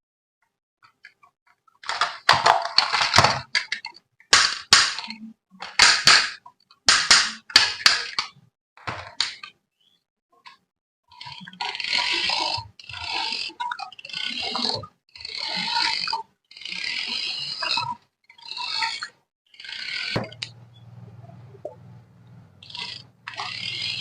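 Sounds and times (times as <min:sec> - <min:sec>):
clicking and clattering handling noise: 0:00.8 - 0:09.6.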